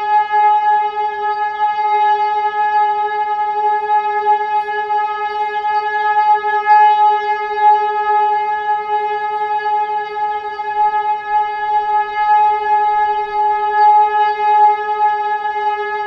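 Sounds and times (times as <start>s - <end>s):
air raid siren steady tone: 0.0s - 16.0s.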